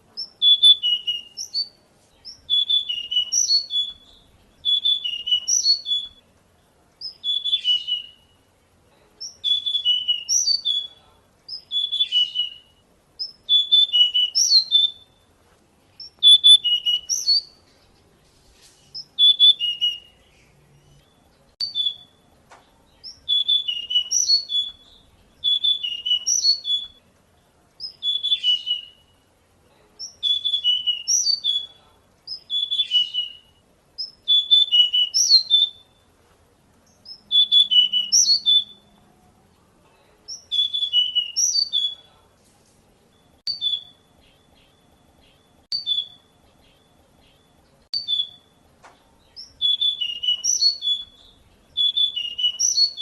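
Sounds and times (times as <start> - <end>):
bird singing whistled phrase: 0.2 - 6.2, 7.0 - 8.4, 9.2 - 15.2, 16.0 - 17.6, 19.0 - 22.2, 23.0 - 27.0, 27.8 - 29.2, 30.0 - 35.9, 37.0 - 38.9, 40.3 - 42.2, 43.5 - 48.6, 49.3 - 53.0.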